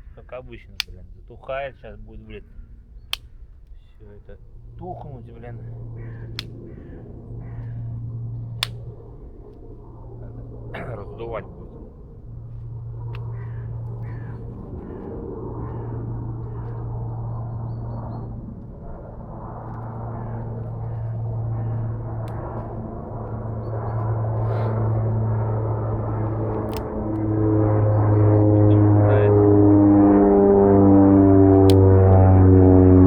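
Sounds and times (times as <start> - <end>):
low steady hum: 0.0 - 33.0
person blowing on a campfire: 24.4 - 25.0.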